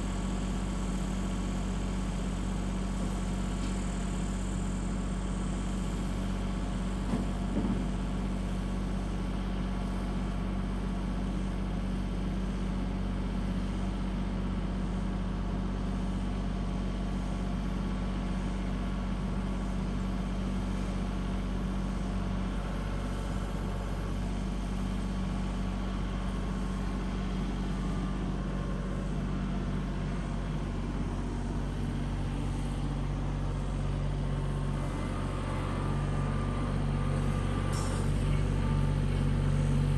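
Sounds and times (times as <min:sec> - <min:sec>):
tractor engine running: 0:22.2 - 0:39.9.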